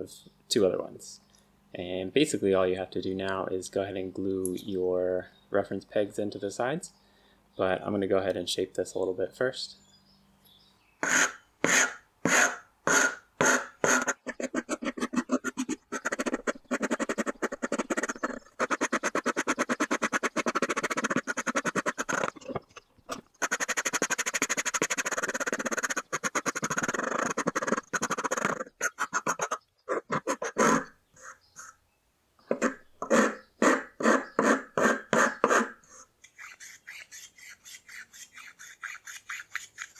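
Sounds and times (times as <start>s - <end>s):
hand tool rasping wood: 11.0s - 30.9s, 32.5s - 39.9s.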